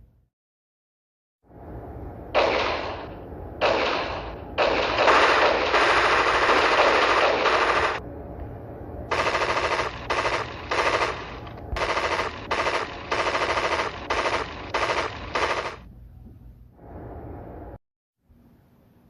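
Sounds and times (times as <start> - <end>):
automatic gunfire: 2.4 - 8.0, 9.1 - 15.8.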